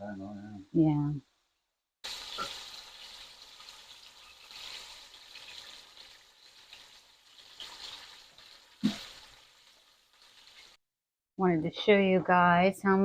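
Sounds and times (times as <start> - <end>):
chicken frying in oil: 2.0 - 10.8.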